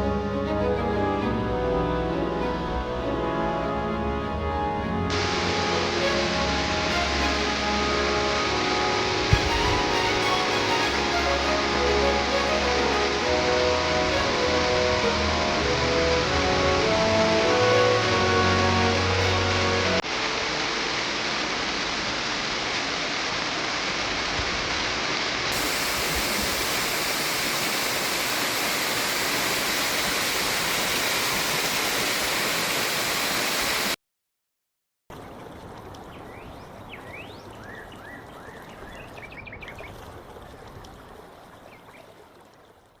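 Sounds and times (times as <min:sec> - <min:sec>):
waterfall rushing: 0:04.4 - 0:34.0.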